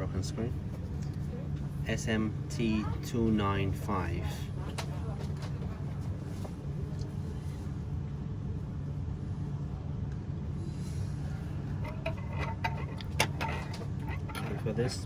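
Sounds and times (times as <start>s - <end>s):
low background rumble and hum: 0.0s - 15.0s.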